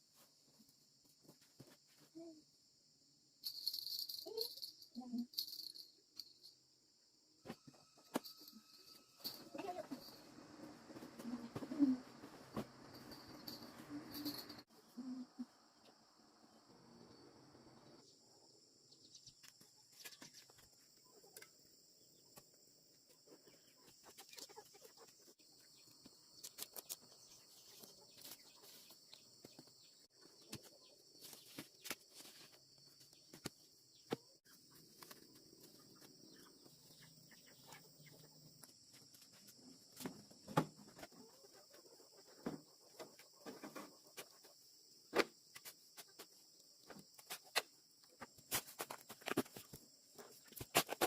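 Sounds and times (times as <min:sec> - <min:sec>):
faint chickens clucking: 0:23.1 - 0:26.0, 0:34.1 - 0:38.6, 0:40.8 - 0:44.9.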